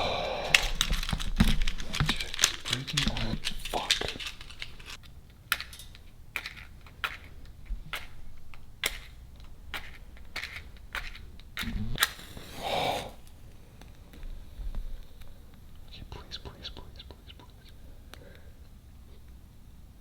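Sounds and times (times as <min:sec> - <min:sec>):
short hiss: 0:11.7 - 0:13.4.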